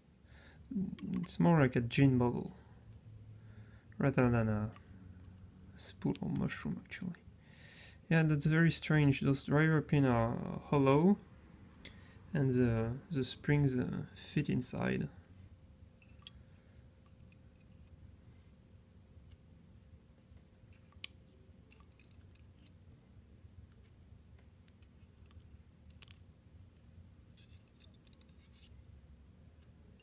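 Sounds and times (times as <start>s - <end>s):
metal lock parts clicking: 16.0s - 16.4s, 20.7s - 22.8s, 24.7s - 26.3s, 27.4s - 28.7s.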